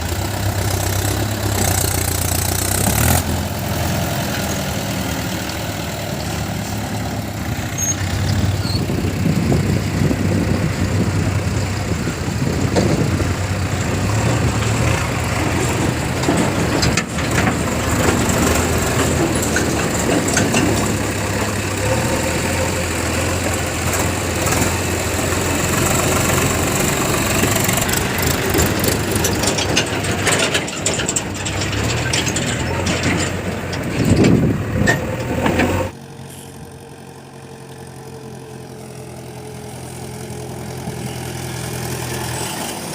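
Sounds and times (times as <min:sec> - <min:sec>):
diesel engines running: 0:00.0 - 0:42.9.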